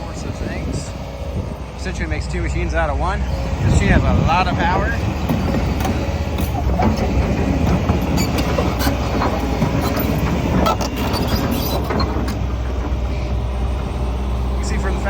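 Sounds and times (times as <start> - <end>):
excavator engine rumbling: 0.0 - 15.0
metallic clanks and knocks: 5.2 - 13.0.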